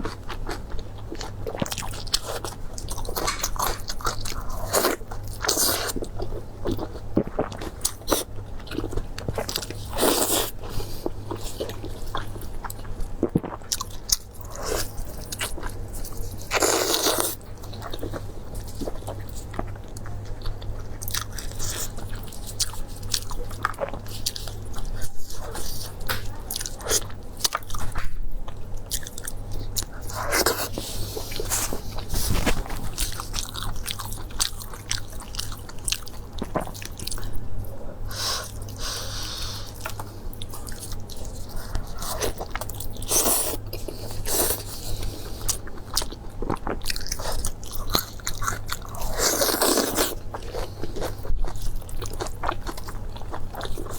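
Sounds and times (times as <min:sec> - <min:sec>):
low steady hum: 0:00.0 - 0:53.9
person chewing and crunching: 0:00.0 - 0:53.9.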